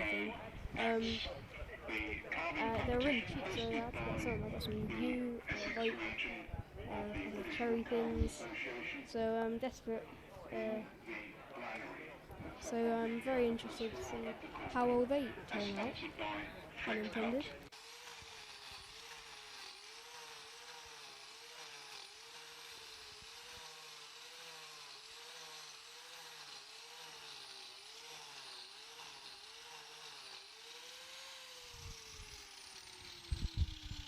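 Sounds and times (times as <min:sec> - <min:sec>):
angle grinder cutting wood: 0:00.0 - 0:01.3, 0:01.9 - 0:11.9, 0:12.6 - 0:34.0.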